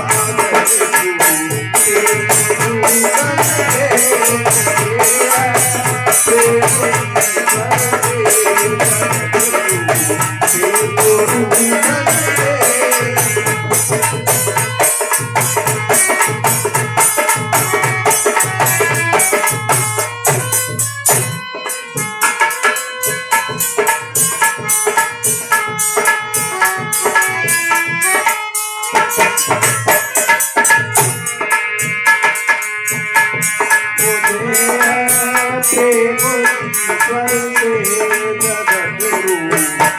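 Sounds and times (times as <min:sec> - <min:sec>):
dholak drumming: 0:00.0 - 0:39.9
melodic instrumental line: 0:00.0 - 0:39.9.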